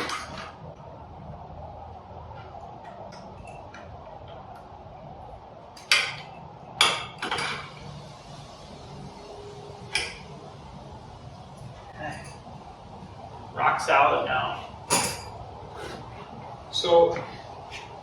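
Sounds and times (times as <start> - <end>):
metal hand tools clinking: 11.9 - 12.5, 14.9 - 15.4.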